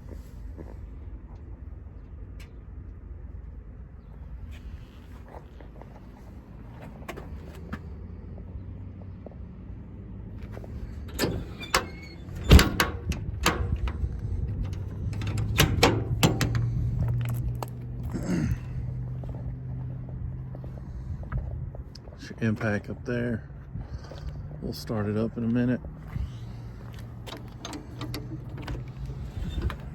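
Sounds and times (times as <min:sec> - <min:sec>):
latches and compartment doors clicking: 0:10.6 - 0:17.6, 0:27.1 - 0:29.9.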